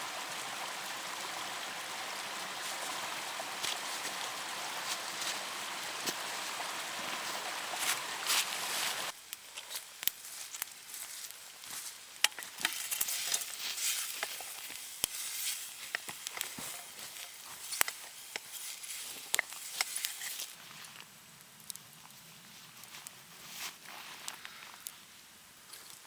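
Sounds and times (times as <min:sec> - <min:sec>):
food sizzling and crackling: 0:00.0 - 0:20.8
steady hiss: 0:00.0 - 0:26.0.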